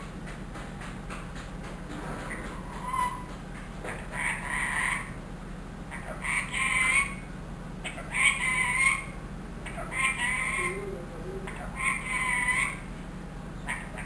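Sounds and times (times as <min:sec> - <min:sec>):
parrot calls: 0:02.3 - 0:05.2, 0:05.9 - 0:12.9, 0:13.6 - 0:14.0.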